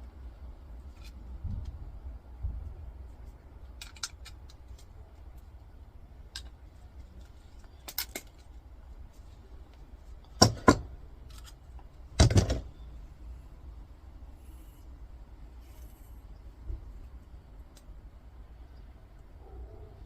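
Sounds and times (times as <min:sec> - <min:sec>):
metal parts clicking and clinking: 0:03.6 - 0:04.9, 0:07.2 - 0:08.6, 0:10.3 - 0:12.4.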